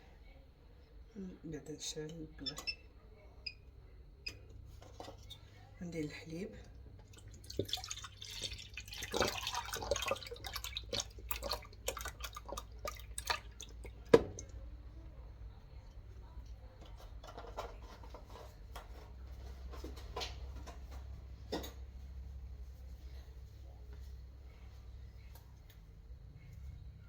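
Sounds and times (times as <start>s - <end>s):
milk pouring into a pot: 6.7s - 14.9s
kitchen clicks and knocks: 16.8s - 21.9s.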